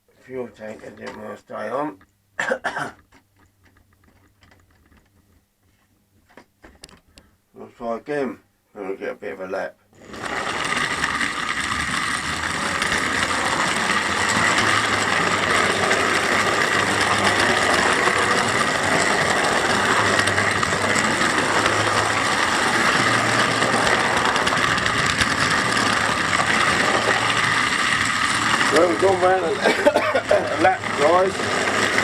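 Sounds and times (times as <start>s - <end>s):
wheels running on rails: 3.0s - 7.0s, 10.0s - 32.0s
model train motor whirring: 10.0s - 32.0s.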